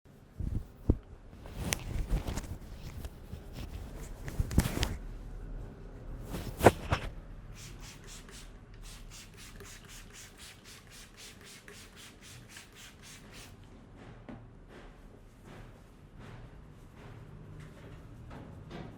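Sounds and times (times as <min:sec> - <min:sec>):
hands rubbing scalp and hair: 0:00.4 - 0:05.0, 0:06.2 - 0:13.6.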